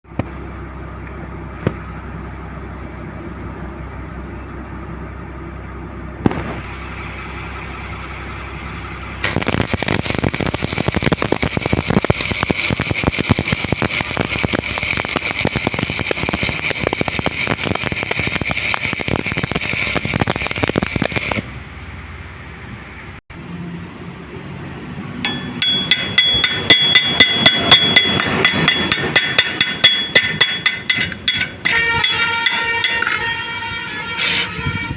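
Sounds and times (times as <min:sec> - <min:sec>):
welder hum: 0:06.7 - 0:23.2, 0:25.2 - 0:34.6
welding arc crackling: 0:08.7 - 0:21.8, 0:25.3 - 0:34.5
metal striking metal: 0:25.2 - 0:34.5.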